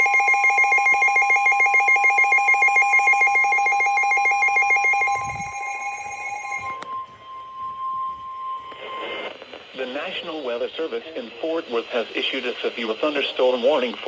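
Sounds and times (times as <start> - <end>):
pulsing electronic siren: 0.0 - 9.7
steady warning tone: 0.0 - 11.9.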